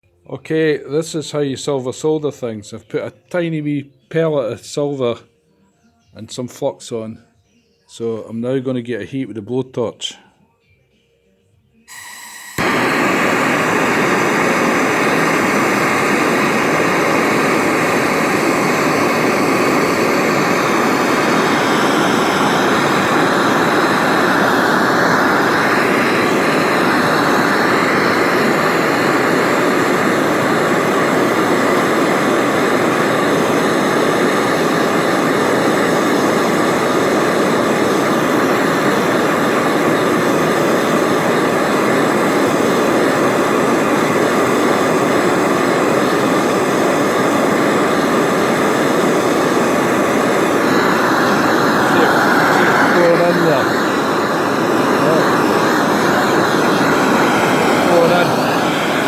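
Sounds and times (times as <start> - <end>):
blowtorch flame roaring: 11.9 - 59.0.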